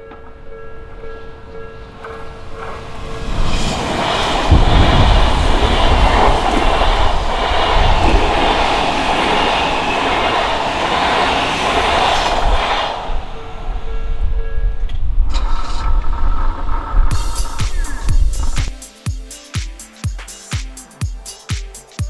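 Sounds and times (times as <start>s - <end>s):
level crossing warning bell: 0.0s - 3.5s, 13.3s - 14.9s
electric train passing: 0.0s - 18.8s.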